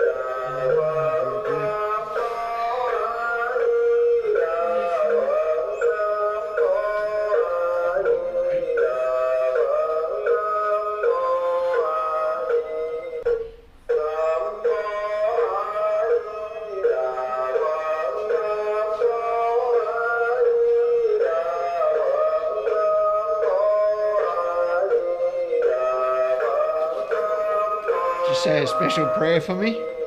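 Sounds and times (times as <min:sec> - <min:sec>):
sung or synthetic melody: 0:00.0 - 0:03.0, 0:26.6 - 0:30.0.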